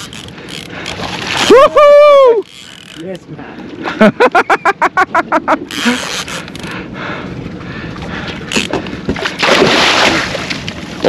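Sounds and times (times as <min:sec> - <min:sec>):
water splashing at boat side: 0:00.0 - 0:04.8, 0:07.6 - 0:11.0.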